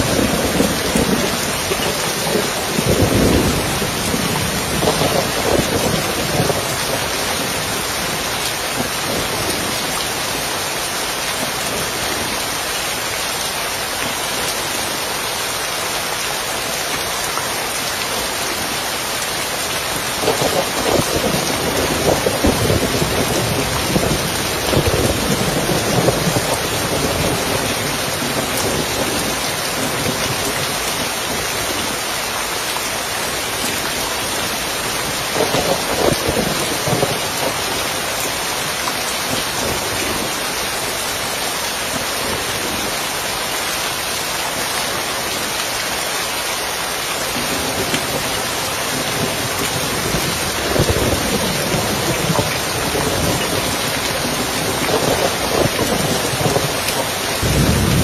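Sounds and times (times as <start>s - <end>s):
thunder rumbling: 0.0s - 8.2s, 20.1s - 31.9s, 35.0s - 37.9s, 47.4s - 58.0s
rain falling on a roof: 0.0s - 58.0s.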